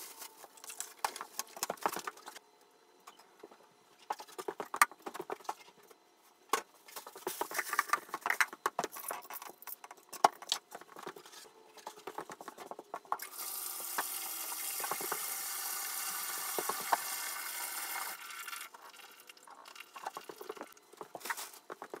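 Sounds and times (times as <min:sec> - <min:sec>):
water running from bathtub faucet: 0:13.2 - 0:19.0.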